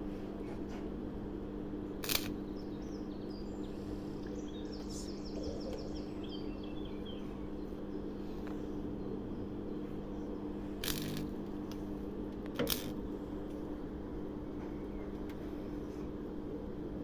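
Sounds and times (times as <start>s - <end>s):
low electrical hum: 0.0s - 17.0s
sharp click: 2.0s - 2.4s
small bird chirping: 2.0s - 11.2s.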